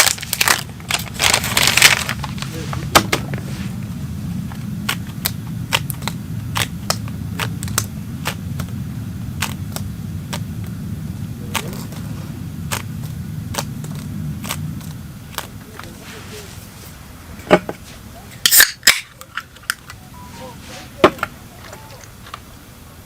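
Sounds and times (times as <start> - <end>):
wood fire crackling and popping: 0.0 - 15.9.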